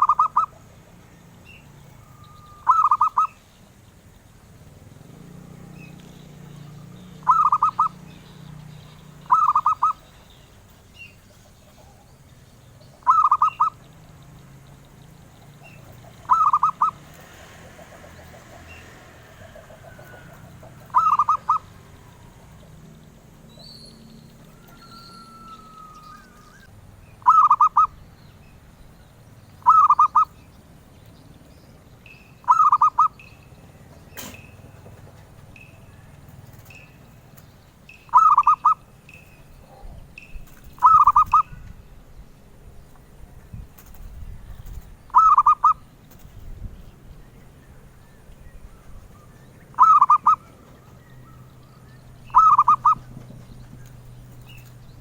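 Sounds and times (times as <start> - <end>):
dove stuttering coos: 0.0 - 1.0, 1.8 - 3.4, 4.8 - 10.1, 13.0 - 23.4, 24.4 - 27.9, 29.6 - 30.4, 32.4 - 33.2, 38.1 - 38.9, 39.7 - 41.7, 43.8 - 46.4, 49.6 - 51.5, 52.3 - 54.8.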